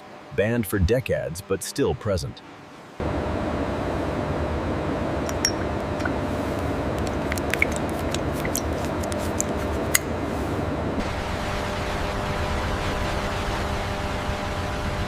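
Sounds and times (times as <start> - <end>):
industrial machinery rumble and hum: 3.0 - 15.0.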